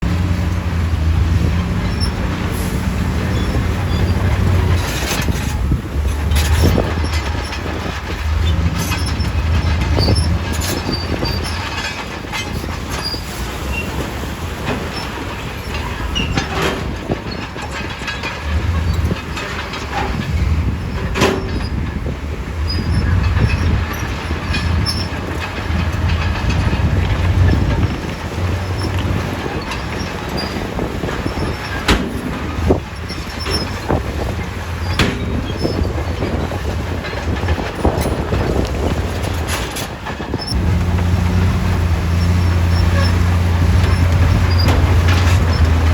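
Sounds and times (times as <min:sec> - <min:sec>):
bulldozer diesel engine: 0:00.0 - 0:45.9
steel tracks clattering: 0:00.0 - 0:45.9
rocks knocking: 0:40.6 - 0:45.9.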